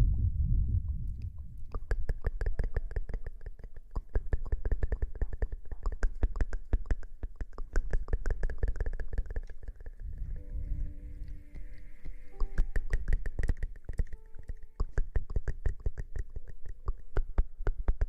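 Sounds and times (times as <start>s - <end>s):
crisp taps or scratches: 1.7s - 10.0s, 11.2s - 18.0s
faint steady tone: 10.0s - 15.4s.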